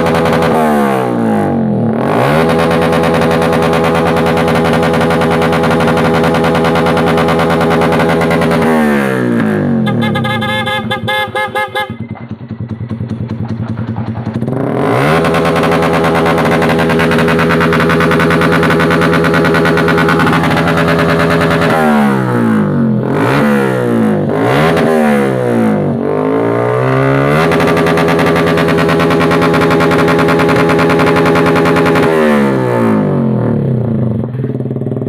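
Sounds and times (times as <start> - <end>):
motorcycle engine revving: 0.0 - 35.0.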